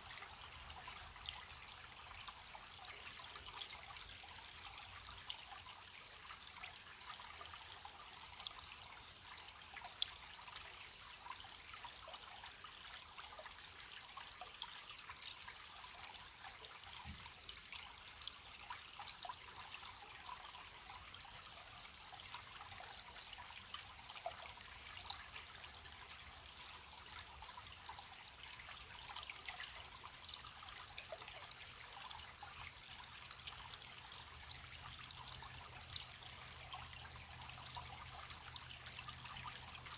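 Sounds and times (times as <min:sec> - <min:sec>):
stream trickling and babbling: 0:00.0 - 0:39.9
crickets chirping: 0:15.2 - 0:30.8.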